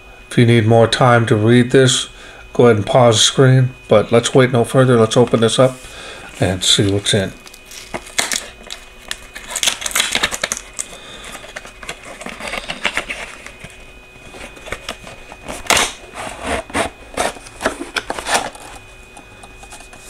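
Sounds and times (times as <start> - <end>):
box packaging clicks and rustles: 6.8 - 16.0, 16.6 - 18.9.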